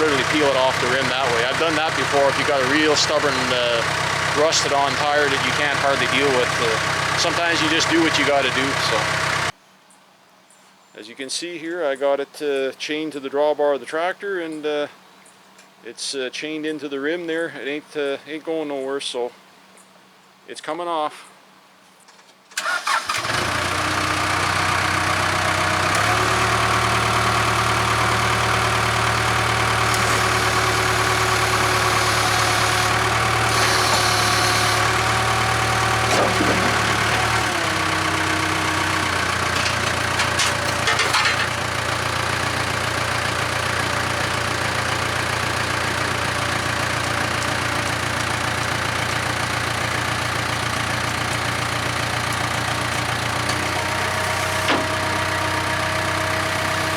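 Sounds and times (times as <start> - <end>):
diesel engine idling: 0.0 - 9.6, 22.6 - 56.9.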